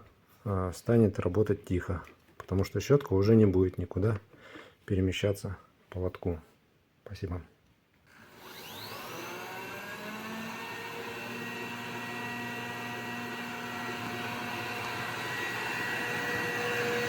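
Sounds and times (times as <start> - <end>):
robot vacuum cleaner whine: 8.1 - 17.0.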